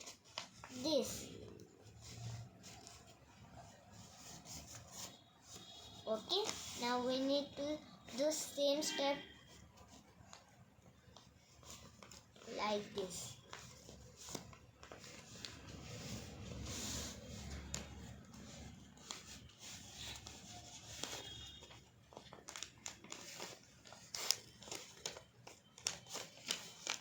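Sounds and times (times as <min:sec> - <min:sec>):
paper rustling and crinkling: 0:00.0 - 0:08.3, 0:09.2 - 0:27.0.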